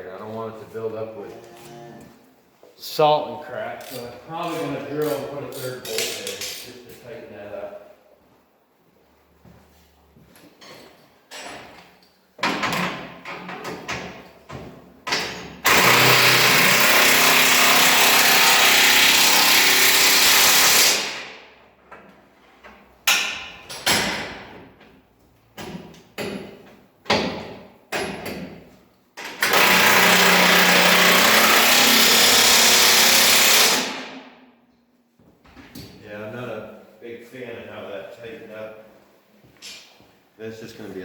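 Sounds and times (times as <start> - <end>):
electric drill boring into metal: 15.7 - 21.2, 29.4 - 34.0.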